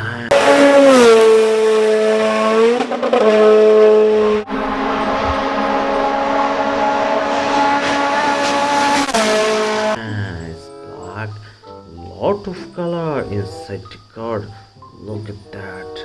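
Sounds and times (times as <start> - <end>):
race car engine drone: 0.0 - 10.0.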